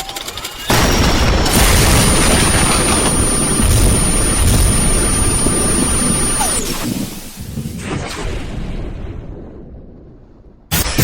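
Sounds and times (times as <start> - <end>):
jet-like rushing noise: 1.5 - 8.3
thin high whine: 2.5 - 6.8.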